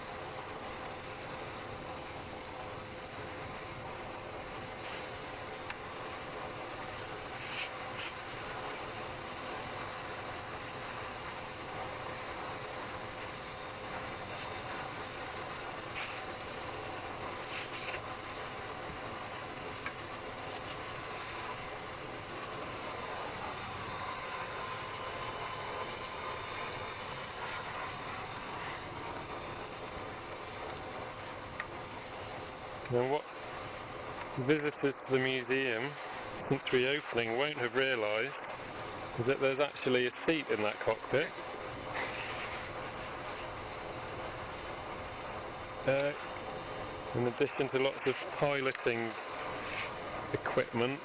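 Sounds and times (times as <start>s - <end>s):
vacuum cleaner running: 0.0s - 51.0s
nozzle rubbing on surface: 41.6s - 50.2s.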